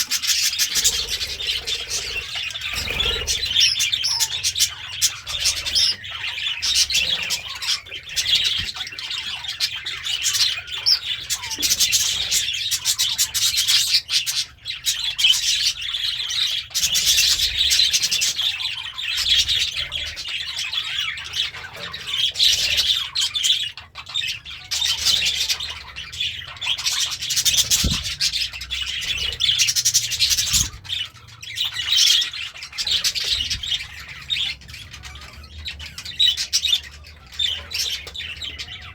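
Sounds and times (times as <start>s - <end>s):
budgerigar chattering: 0.0s - 38.9s.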